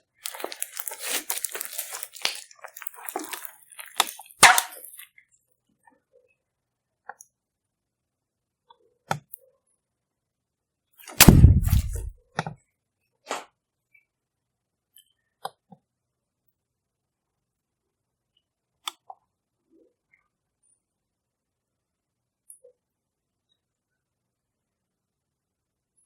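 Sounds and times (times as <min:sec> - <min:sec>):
heavy thump: 0:11.2 - 0:12.1.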